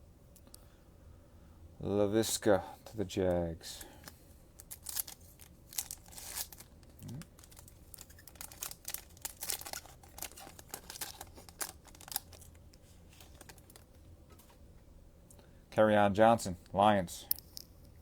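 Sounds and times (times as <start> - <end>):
cards being handled: 3.8 - 14.6
plastic wrapper tearing and crinkling: 4.6 - 13.9.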